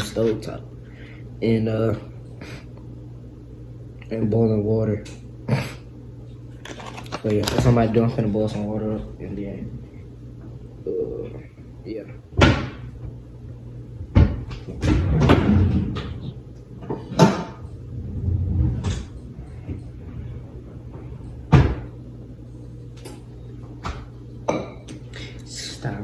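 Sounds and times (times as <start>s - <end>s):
cupboard doors opening and shutting: 14.2s - 16.2s.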